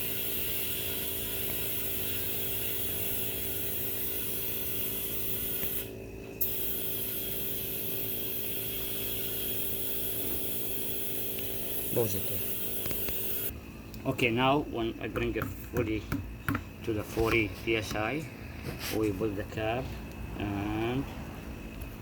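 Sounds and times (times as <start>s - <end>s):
air hissing into tire: 0.0s - 13.5s
air compressor running: 0.0s - 22.0s.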